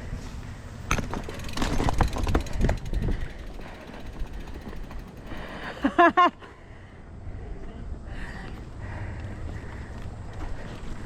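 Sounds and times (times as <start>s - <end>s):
mountain bike clattering: 0.8s - 6.3s
freehub ratchet ticking: 0.9s - 6.0s.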